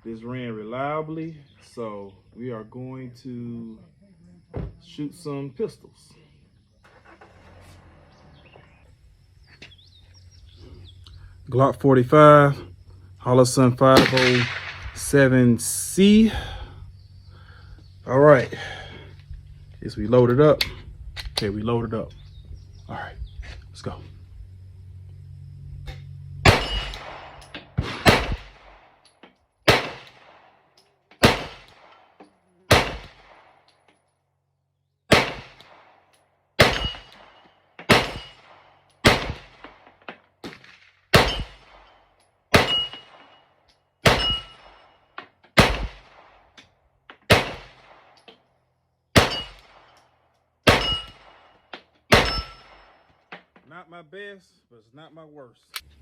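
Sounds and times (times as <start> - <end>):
pistol shots: 13.8 - 15.1, 26.4 - 30.6, 31.2 - 33.7, 35.1 - 39.8, 40.4 - 43.4, 44.0 - 44.9, 45.5 - 46.6, 47.2 - 48.3, 49.1 - 50.0, 50.6 - 53.2.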